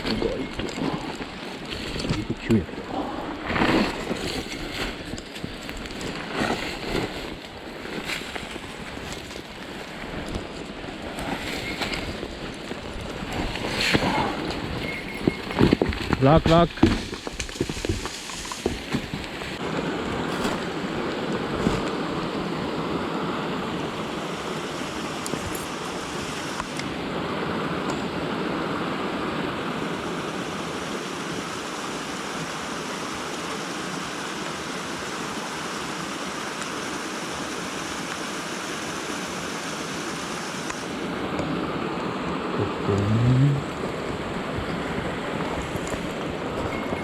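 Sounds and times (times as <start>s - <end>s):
stream water rushing over rocks: 17.2s - 47.0s.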